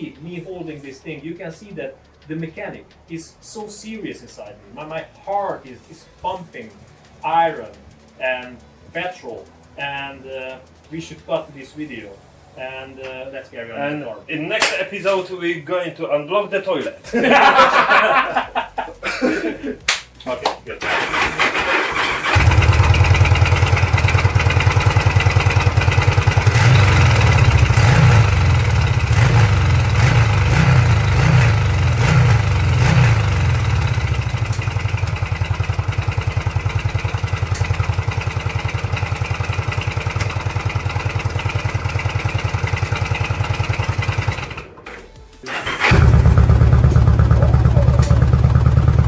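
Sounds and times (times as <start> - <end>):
motorcycle engine revving and idling: 20.8 - 44.8, 45.5 - 49.0.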